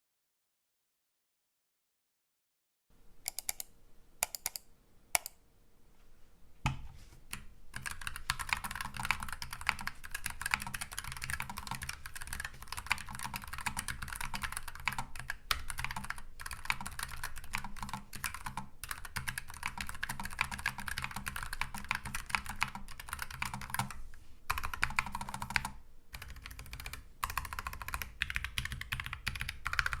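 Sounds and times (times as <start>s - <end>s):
mechanical keyboard typing: 3.3s - 4.6s, 7.3s - 23.9s, 24.5s - 30.0s.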